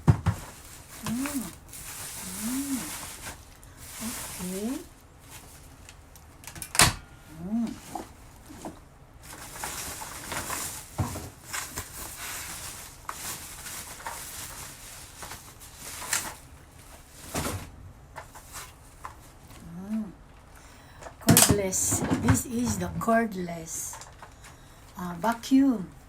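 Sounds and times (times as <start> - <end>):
plastic and cardboard rustling: 0.0 - 25.7.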